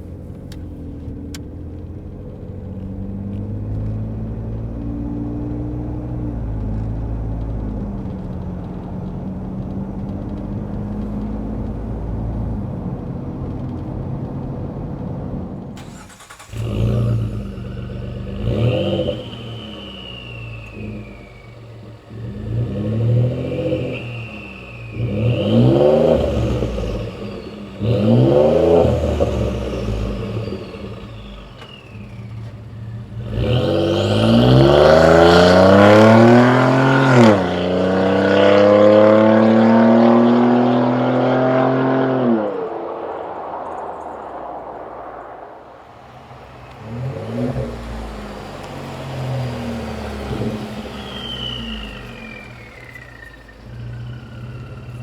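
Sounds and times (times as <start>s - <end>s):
car engine revving: 0.0s - 55.0s
turbo whistle: 23.3s - 27.4s, 50.8s - 55.0s.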